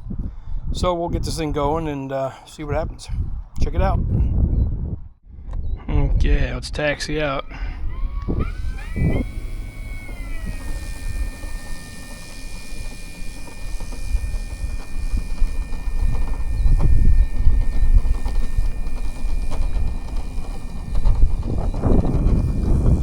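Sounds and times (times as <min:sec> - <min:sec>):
wind rumble on microphone: 0:00.0 - 0:02.0, 0:02.6 - 0:23.0
electric motor whining: 0:06.8 - 0:23.0.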